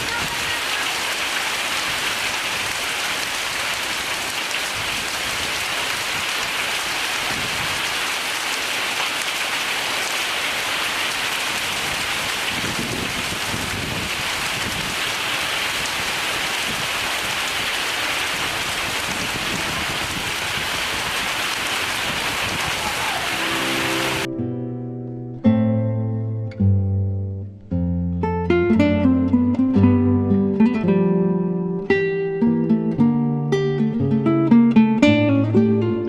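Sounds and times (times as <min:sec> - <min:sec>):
heavy rain falling: 0:00.0 - 0:24.3.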